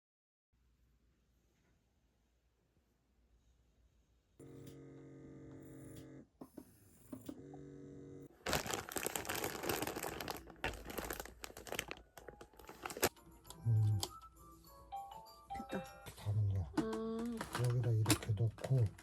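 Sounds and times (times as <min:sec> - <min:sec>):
mechanical hum: 0:04.3 - 0:08.9
crinkling and rustling: 0:08.4 - 0:13.2, 0:16.0 - 0:19.0.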